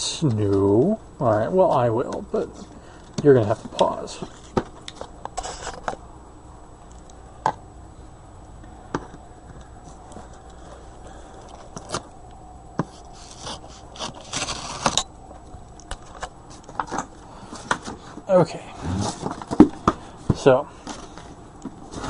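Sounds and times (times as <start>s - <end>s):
packaging scraping rustle: 2.5s - 6.0s, 12.9s - 15.0s.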